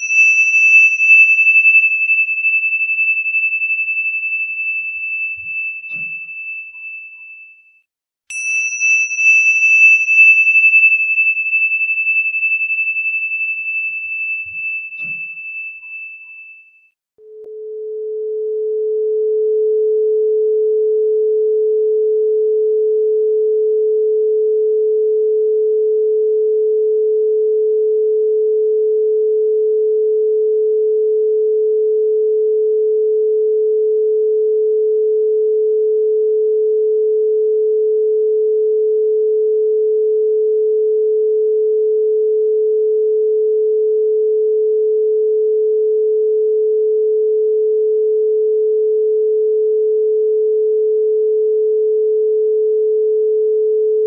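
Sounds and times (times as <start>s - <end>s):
pure sine tone: 0.0s - 7.4s.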